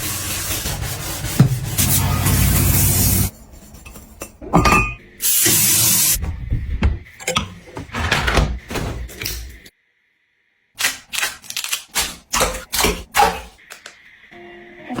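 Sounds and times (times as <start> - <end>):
hiss: 5.2 - 6.2.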